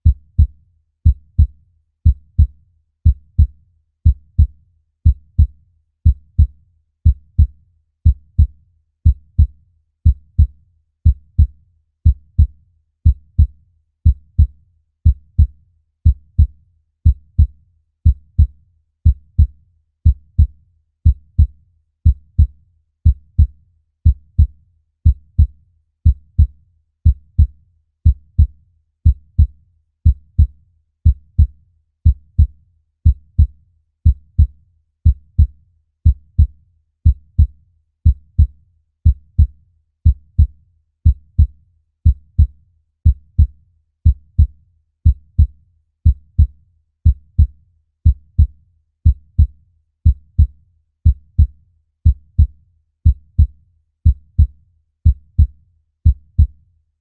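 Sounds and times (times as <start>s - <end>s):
heartbeat thumping: 35.1s - 35.5s, 39.1s - 39.5s, 43.1s - 43.5s, 44.1s - 45.5s, 46.1s - 46.5s, 47.1s - 47.5s, 48.1s - 48.5s, 49.1s - 49.5s, 50.1s - 53.5s, 54.1s - 55.5s, 56.1s - 56.6s.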